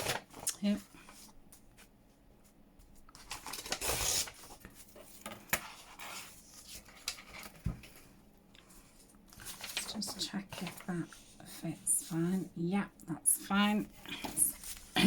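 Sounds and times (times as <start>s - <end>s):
paper rustling: 0.0s - 8.0s, 8.6s - 11.3s, 14.0s - 15.0s.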